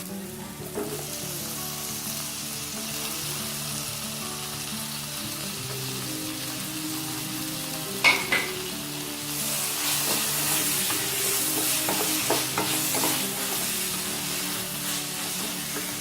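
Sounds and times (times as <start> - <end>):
onions sizzling in a pan: 0.0 - 16.0
metal spoon clinking on a pan: 8.0 - 8.5.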